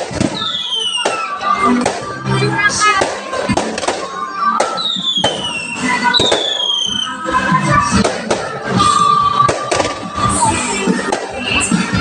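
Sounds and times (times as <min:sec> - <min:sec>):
firework bangs: 0:00.0 - 0:02.2, 0:02.9 - 0:07.1, 0:07.8 - 0:11.5
falling firework whistles: 0:00.2 - 0:01.4, 0:04.6 - 0:07.2.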